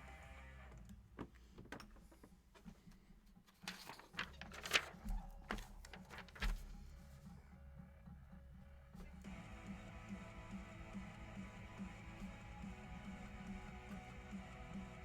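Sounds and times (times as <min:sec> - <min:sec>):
card packaging clicks and rustles: 0:03.5 - 0:07.1.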